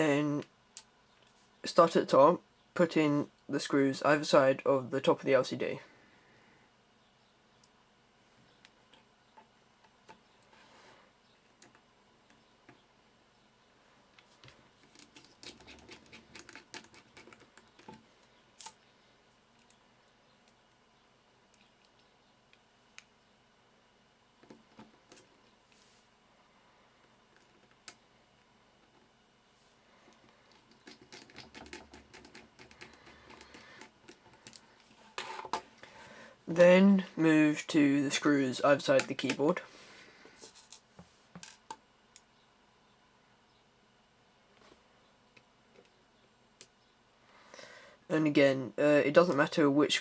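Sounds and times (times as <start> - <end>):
screwdriver clicking and scratching: 15.0 - 18.0, 30.6 - 34.6.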